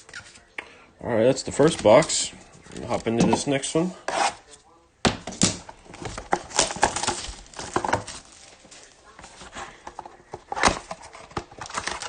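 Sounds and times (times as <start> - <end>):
cardboard box crinkling and tapping: 5.1 - 12.0.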